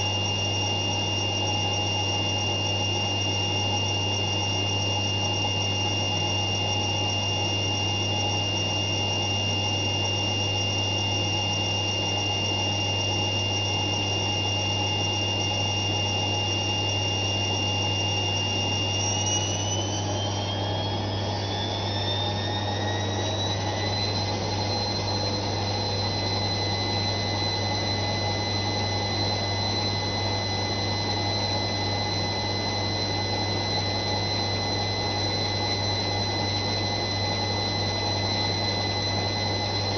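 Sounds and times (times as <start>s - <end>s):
washing machine spinning: 0.0s - 39.9s.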